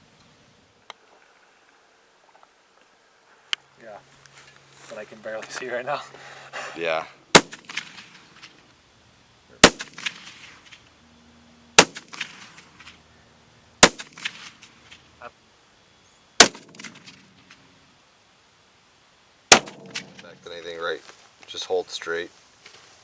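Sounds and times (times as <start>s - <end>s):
rifle shots with rolling echo: 7.3s - 8.5s, 9.6s - 10.8s, 11.7s - 13.0s, 13.8s - 15.0s, 16.4s - 17.6s, 19.5s - 20.4s.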